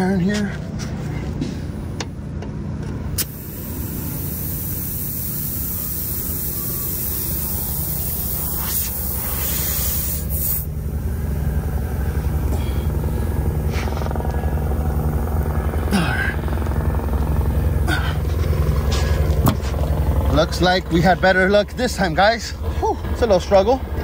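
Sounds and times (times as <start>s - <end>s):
compressed air hissing from hose: 3.2s - 10.7s
truck diesel engine idling: 3.4s - 24.0s.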